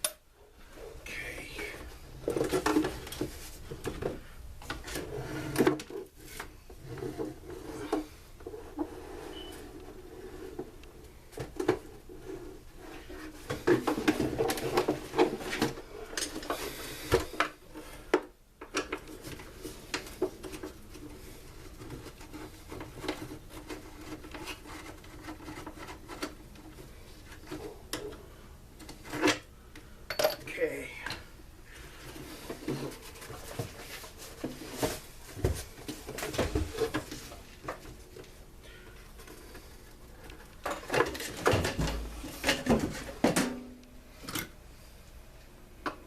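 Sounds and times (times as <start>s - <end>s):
clicks and knocks of plastic parts: 13.5s - 21.0s.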